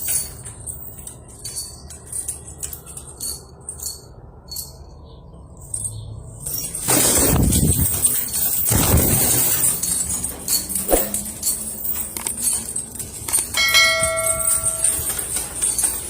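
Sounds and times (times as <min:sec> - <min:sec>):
bell-like metallic ring: 0:13.5 - 0:15.4.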